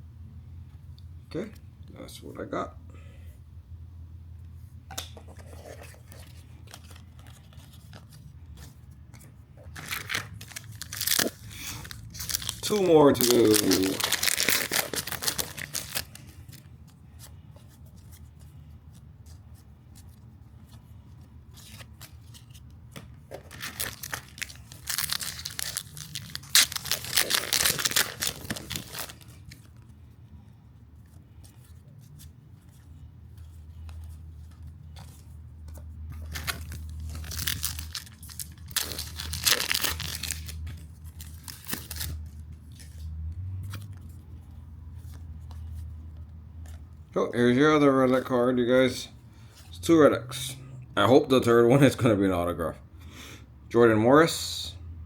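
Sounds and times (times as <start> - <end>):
cards rustling: 4.9 - 49.8
foil packs tearing and crinkling: 9.7 - 16.6, 23.4 - 29.7, 36.2 - 42.8.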